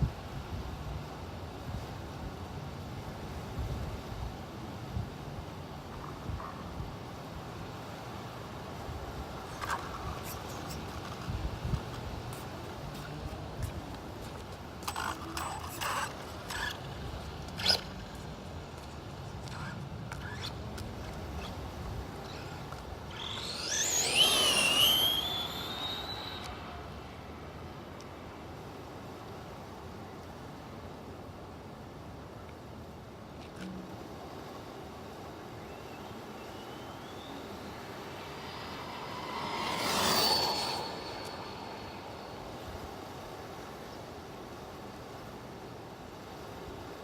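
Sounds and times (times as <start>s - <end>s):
tyre noise: 9.5s - 26.7s
high-pitched electric motor whine: 19.3s - 27.2s, 36.5s - 43.3s.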